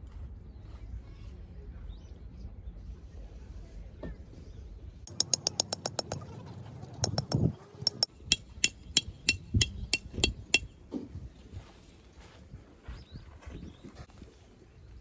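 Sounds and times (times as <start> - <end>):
metal striking metal: 5.1 - 6.2, 7.0 - 10.7.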